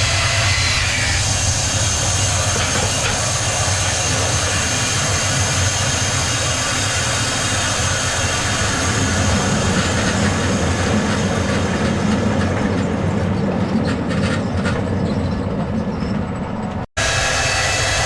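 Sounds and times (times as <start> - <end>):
sawmill machinery droning: 0.0 - 12.2, 17.0 - 18.0.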